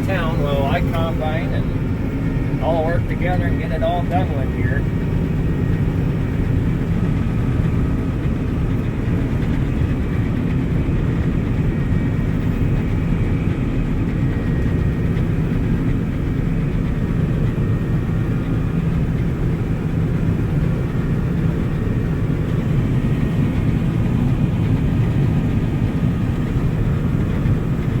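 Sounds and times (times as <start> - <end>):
combine harvester diesel engine drone: 0.0 - 28.0
threshing machinery whine: 0.0 - 28.0.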